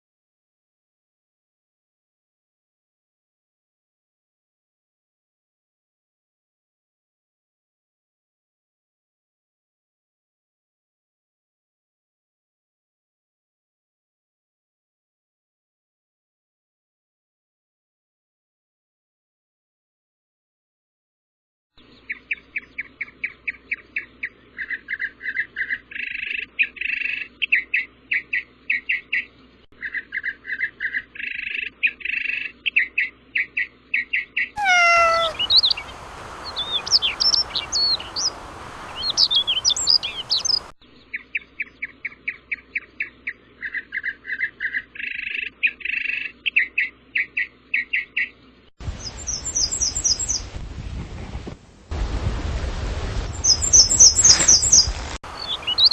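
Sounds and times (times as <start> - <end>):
bird chirping: 21.8 - 48.4, 49.0 - 50.4, 53.4 - 55.9
bird falling call: 34.6 - 40.7
background hiss: 35.0 - 40.7.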